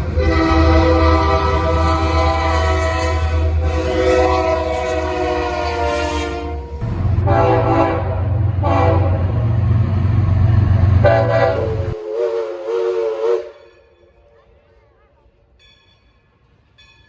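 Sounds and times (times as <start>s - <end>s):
locomotive horn blasts: 0.0s - 9.4s, 11.0s - 13.8s
low engine rumble: 0.0s - 12.0s.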